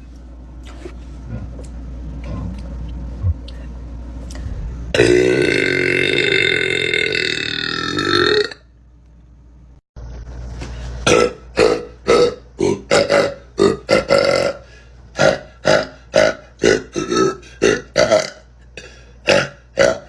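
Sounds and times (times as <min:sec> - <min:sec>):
woman burping: 0:04.9 - 0:08.6, 0:11.1 - 0:14.6, 0:15.2 - 0:20.0.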